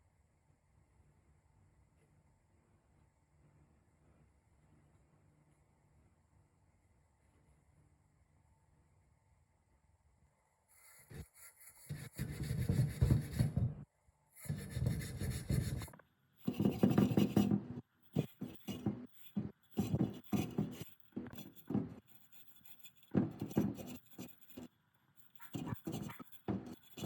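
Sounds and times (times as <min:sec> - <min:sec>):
hand scraping strokes: 0:14.4 - 0:27.0.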